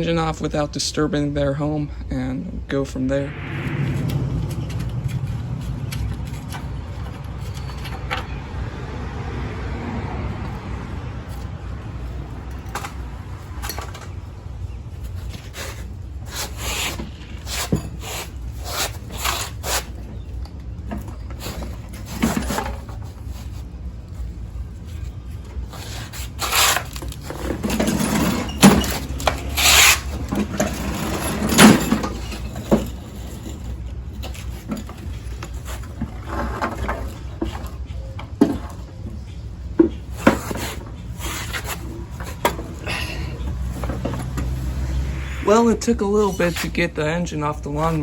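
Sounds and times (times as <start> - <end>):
steady low rumble: 2.5 - 8.6, 42.7 - 46.0.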